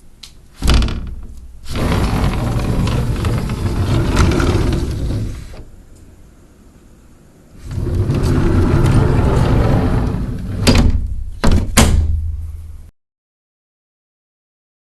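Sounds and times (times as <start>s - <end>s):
sliding window rumbling on track: 0.6s - 5.8s, 7.6s - 11.0s.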